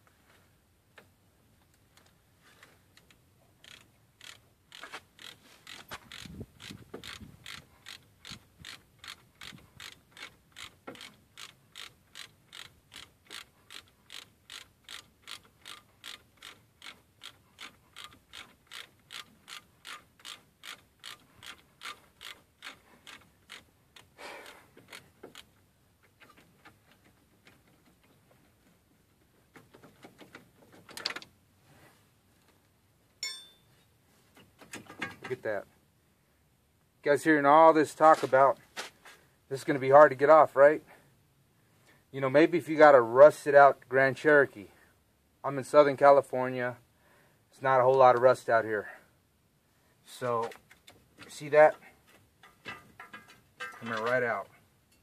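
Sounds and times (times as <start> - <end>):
ratchet wrench clicking: 3.6 - 25.5
sharp metal clack: 33.2 - 33.7, 52.4 - 54.3
metal knocks: 52.4 - 54.3.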